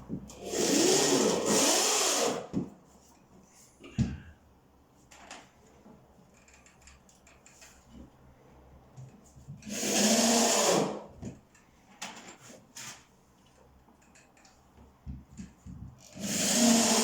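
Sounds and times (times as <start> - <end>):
cordless drill running: 0.4 - 2.4, 9.7 - 11.0, 16.2 - 17.0.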